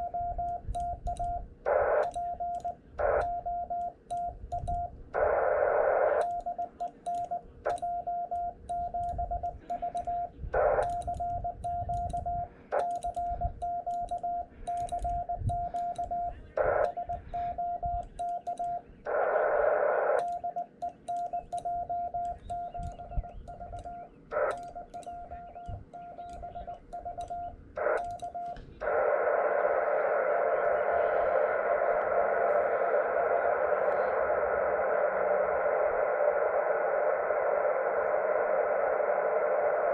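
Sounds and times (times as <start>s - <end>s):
morse code beeps: 0.0s - 29.8s
radio band noise: 0.0s - 39.9s
receiver hiss: 0.0s - 39.9s.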